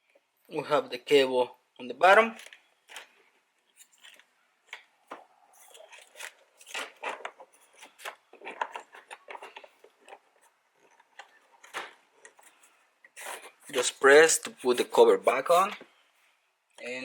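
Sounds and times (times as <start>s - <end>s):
plastic parts clicking: 2.3s - 13.2s
plastic scraping rubs: 2.3s - 16.0s.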